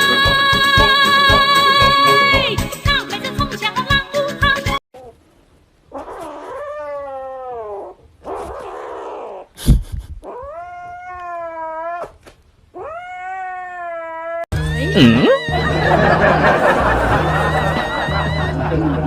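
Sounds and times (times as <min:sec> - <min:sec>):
cat yowling: 0:05.9 - 0:09.5, 0:10.2 - 0:12.2, 0:12.8 - 0:15.5.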